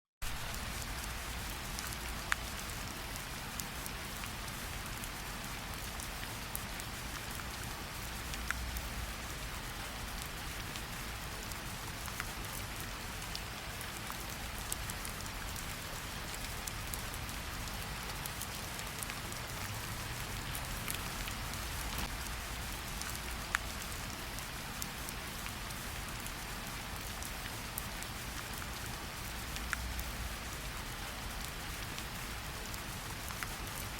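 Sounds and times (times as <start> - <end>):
steady rain falling: 0.2 - 33.9
wood fire crackling: 11.6 - 24.6.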